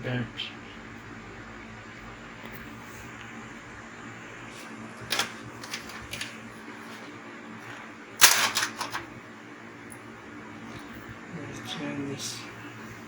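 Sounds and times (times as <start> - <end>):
small hard parts clicking: 8.2 - 9.0.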